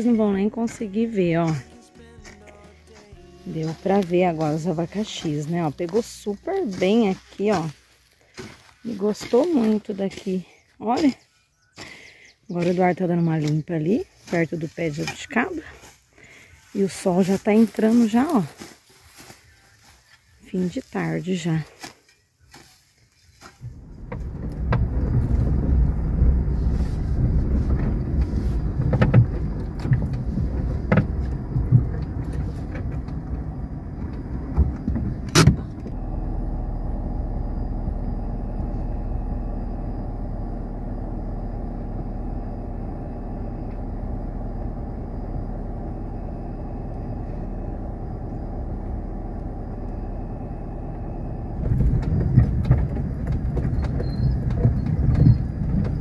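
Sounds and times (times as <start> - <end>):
car driving rumble: 0.0 - 21.8, 23.3 - 56.0
knocks and rattles: 23.6 - 35.9, 51.6 - 56.0.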